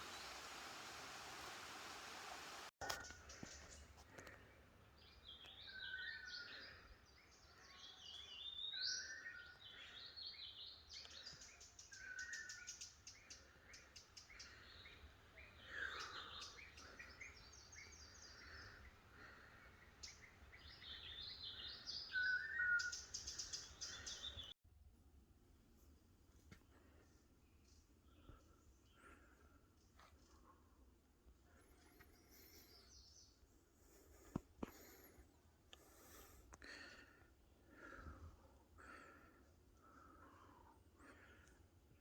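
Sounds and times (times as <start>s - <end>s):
birds singing and chirping: 19.6s - 24.6s.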